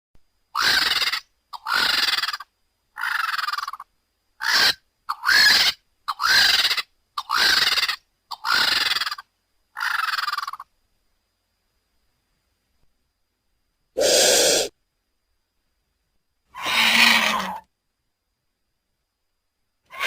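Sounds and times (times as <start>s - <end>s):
vulture hissing calls: 0.6s - 3.8s, 4.4s - 9.2s, 14.0s - 14.8s, 16.6s - 17.6s.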